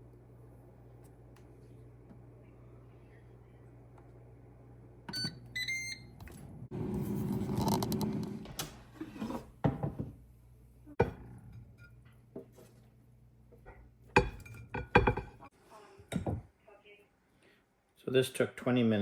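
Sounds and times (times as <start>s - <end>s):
air fryer beeping: 5.1s - 7.0s
kitchen clatter: 13.6s - 15.5s.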